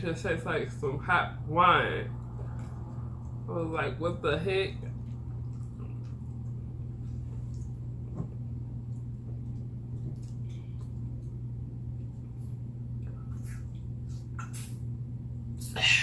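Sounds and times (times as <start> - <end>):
steady low hum: 0.0 - 16.0
mouth sounds of eating: 13.0 - 14.8.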